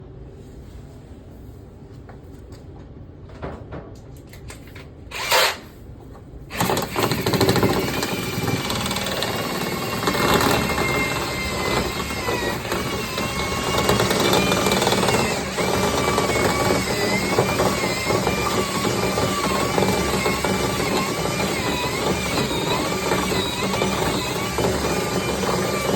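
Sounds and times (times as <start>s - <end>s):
dryer vent cleaning machine rushing: 6.5s - 25.9s.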